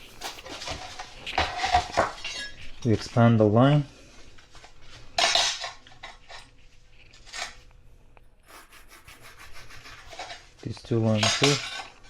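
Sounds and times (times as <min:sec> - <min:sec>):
tools scraping and clinking: 0:00.0 - 0:03.4, 0:04.4 - 0:07.7, 0:09.9 - 0:12.0
thin high rubbing sound: 0:08.5 - 0:10.6.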